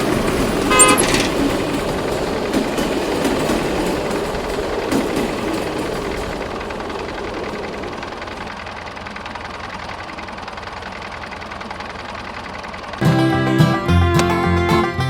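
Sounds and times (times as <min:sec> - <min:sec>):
small motor rattling: 0:00.0 - 0:13.0
plucked string music: 0:13.0 - 0:15.0.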